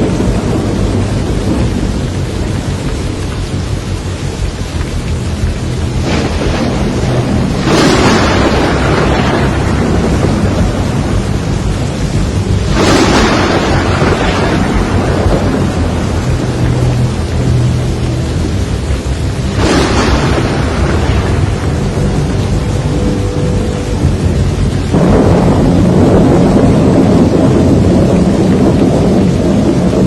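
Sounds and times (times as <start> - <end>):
heavy rain: 0.0 - 30.0
wind: 0.0 - 30.0
loud thunder cracks: 5.8 - 18.6, 19.2 - 30.0.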